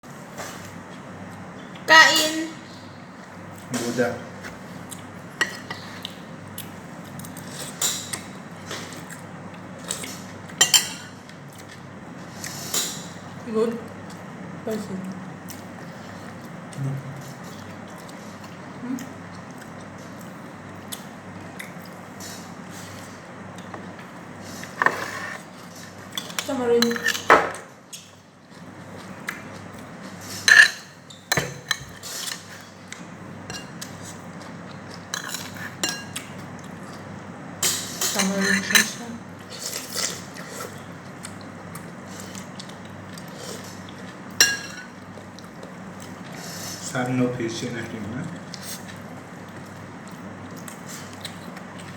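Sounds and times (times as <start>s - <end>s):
cutlery clinking on a plate: 30.5s - 32.4s, 44.4s - 44.9s.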